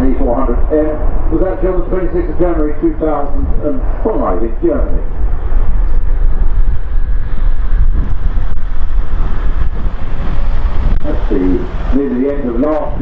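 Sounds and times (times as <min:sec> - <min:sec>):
turboprop aircraft rumbling past: 0:00.0 - 0:13.0
wind buffeting microphone: 0:00.0 - 0:13.0.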